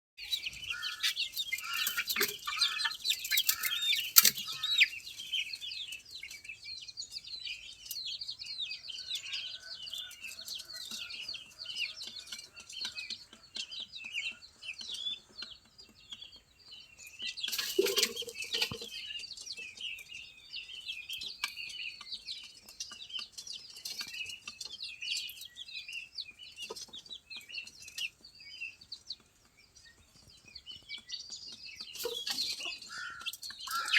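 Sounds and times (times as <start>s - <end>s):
poultry clucking and squawking: 0.2s - 6.4s, 8.5s - 16.4s, 17.2s - 20.3s, 26.4s - 33.9s
poultry cheeping: 0.2s - 33.9s.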